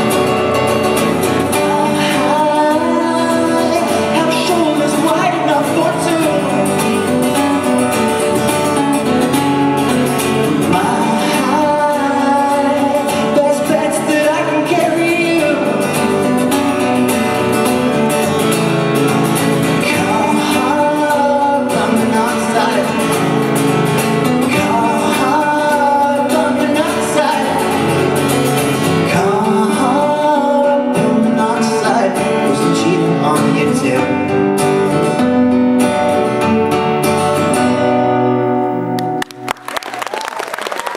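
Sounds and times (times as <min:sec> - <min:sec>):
strummed acoustic guitar: 0:00.0 - 0:39.5
person singing: 0:01.3 - 0:07.8, 0:10.2 - 0:17.9, 0:19.7 - 0:23.4, 0:24.2 - 0:34.4.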